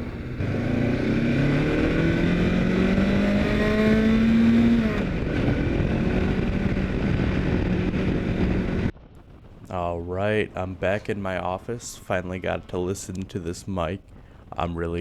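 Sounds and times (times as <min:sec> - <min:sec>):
motorcycle engine revving: 0:00.0 - 0:09.0
wind noise: 0:00.0 - 0:15.0.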